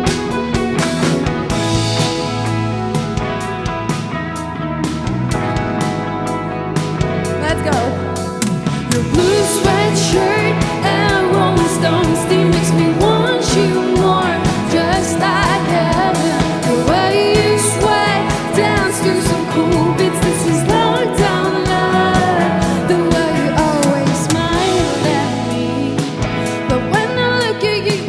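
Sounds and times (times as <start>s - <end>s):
steady drum beat: 0.0s - 28.0s
sustained bass notes: 0.0s - 28.0s
person singing: 8.7s - 28.0s.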